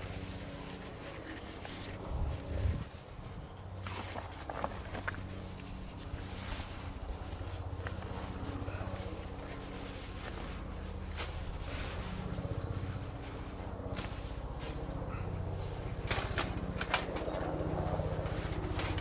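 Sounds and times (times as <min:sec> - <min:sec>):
steady low hum: 0:05.1 - 0:19.0.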